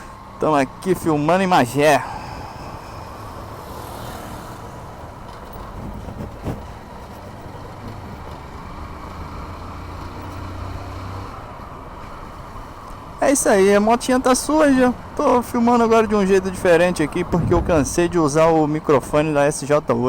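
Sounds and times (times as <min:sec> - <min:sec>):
road noise: 0:00.0 - 0:20.0
wind rushing: 0:02.0 - 0:06.9, 0:17.3 - 0:18.1
low thump: 0:17.4 - 0:18.0.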